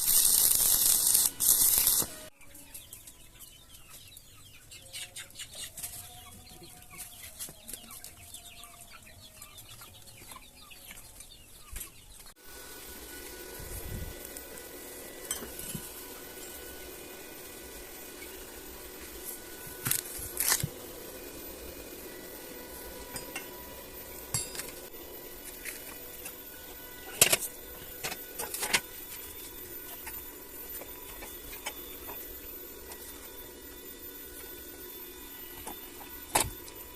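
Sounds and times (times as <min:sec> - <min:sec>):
steady hum: 0:12.3 - 0:36.9.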